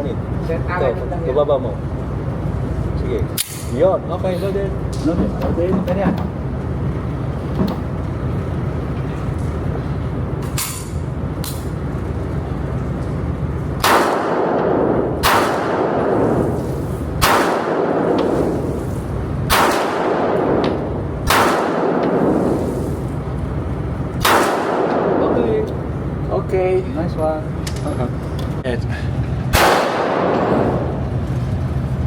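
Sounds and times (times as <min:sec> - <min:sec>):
steady low hum: 0:00.0 - 0:32.0
gunshots with echo: 0:13.8 - 0:16.5, 0:17.2 - 0:18.5, 0:19.5 - 0:22.5, 0:24.2 - 0:25.5, 0:29.5 - 0:31.0.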